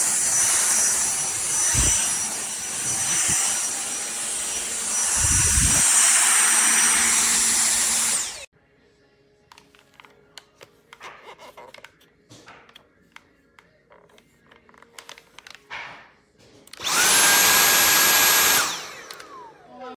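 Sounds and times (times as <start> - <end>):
vacuum motor whine: 0.0 - 8.5, 16.8 - 19.9
plastic parts clicking: 13.9 - 15.7.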